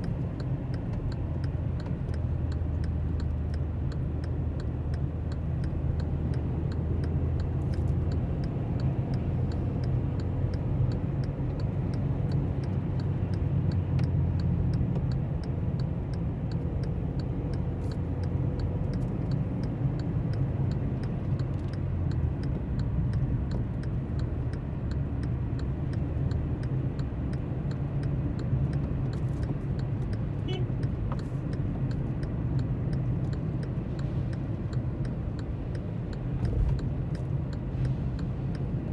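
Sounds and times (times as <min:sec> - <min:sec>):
car engine and road rumble: 0:00.0 - 0:38.9
light regular ticking: 0:00.0 - 0:38.9.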